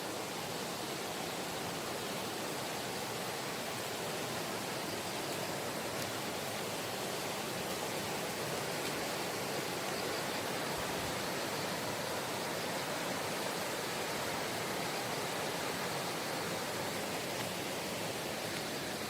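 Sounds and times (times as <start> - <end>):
stream water rushing over rocks: 0.0 - 19.0.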